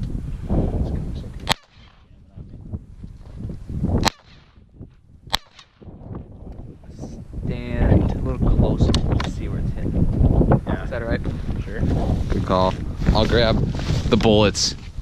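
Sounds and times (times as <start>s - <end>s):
sharp gunshots: 1.4s - 2.2s, 4.0s - 4.7s, 5.3s - 6.0s.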